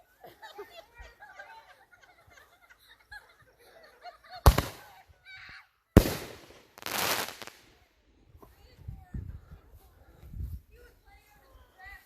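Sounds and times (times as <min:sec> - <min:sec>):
firework bangs: 0:04.5 - 0:05.0, 0:06.0 - 0:07.7.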